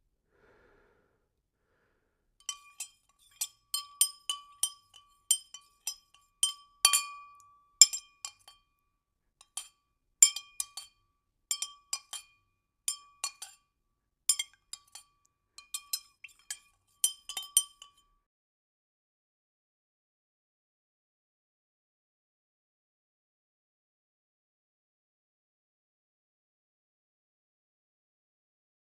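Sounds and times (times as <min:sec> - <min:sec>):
glassy clinks: 0:02.4 - 0:08.7, 0:09.4 - 0:13.6, 0:14.3 - 0:18.0.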